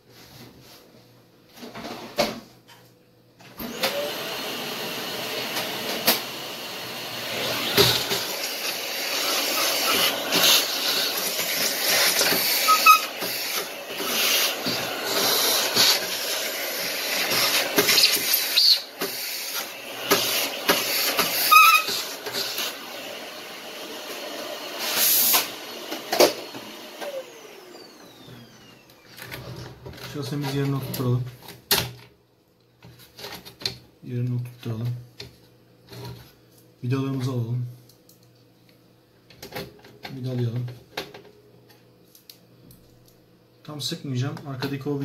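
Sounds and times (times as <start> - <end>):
dust-cleaning machine air rush: 3.6 - 29.0.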